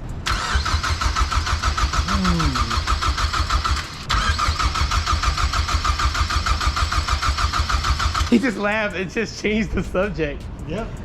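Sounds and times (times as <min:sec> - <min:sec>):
starter motor cranking engine: 0:00.2 - 0:08.5.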